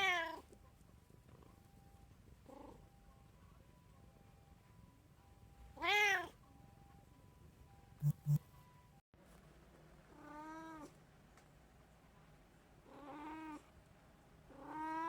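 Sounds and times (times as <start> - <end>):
cat meowing: 5.8 - 6.3, 14.5 - 15.0.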